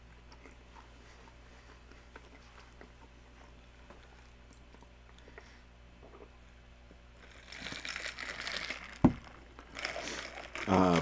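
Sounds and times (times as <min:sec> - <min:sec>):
paper packaging crinkling: 0:07.2 - 0:11.0.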